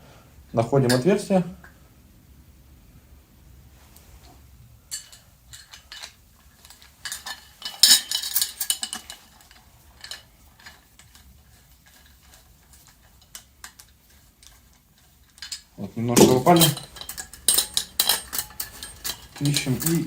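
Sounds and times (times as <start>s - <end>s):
metal fork parts clinking and rattling: 4.9s - 20.0s.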